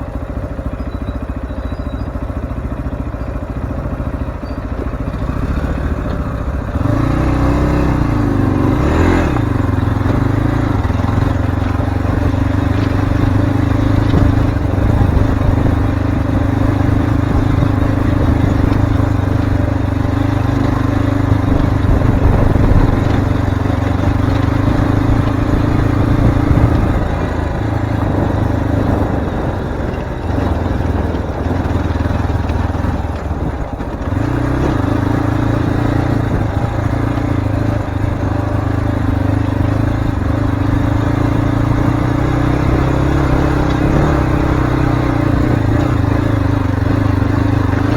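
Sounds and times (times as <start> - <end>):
motorcycle engine running: 0.0 - 47.9.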